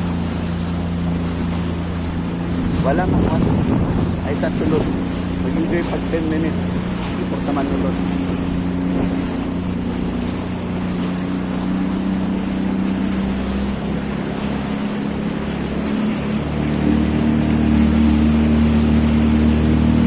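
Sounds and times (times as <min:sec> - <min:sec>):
jet ski engine running: 0:00.0 - 0:20.0
water noise: 0:00.0 - 0:20.0
wind noise: 0:02.2 - 0:05.8.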